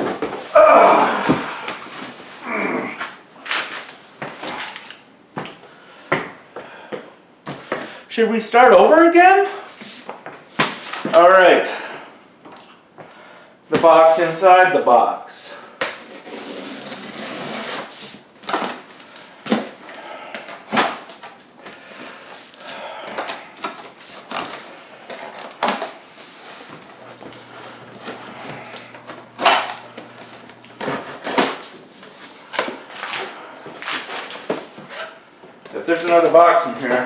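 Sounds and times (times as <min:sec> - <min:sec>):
cardboard scraping and rustling: 0:16.0 - 0:19.8, 0:23.7 - 0:35.2.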